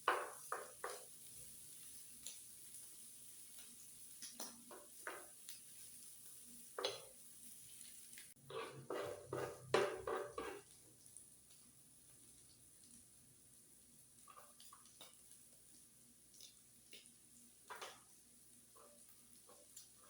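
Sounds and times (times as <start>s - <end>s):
food sizzling: 0.0s - 20.0s
metal utensils scraping on griddle: 8.3s - 10.7s.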